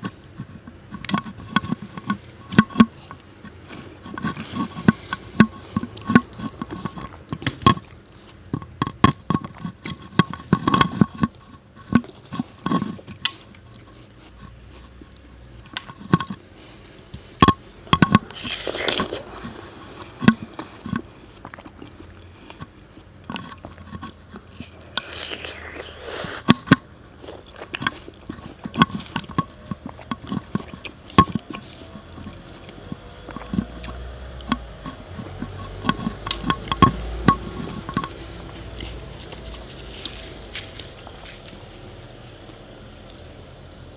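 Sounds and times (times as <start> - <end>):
crunchy chewing: 0.0 - 43.9
juicy bite or slurp: 18.2 - 21.1, 24.5 - 29.3.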